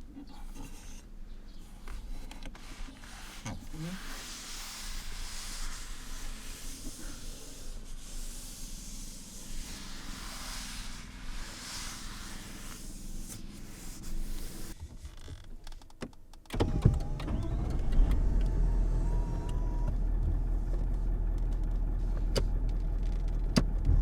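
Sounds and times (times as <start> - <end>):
hand rubbing car surface: 1.6 - 15.1.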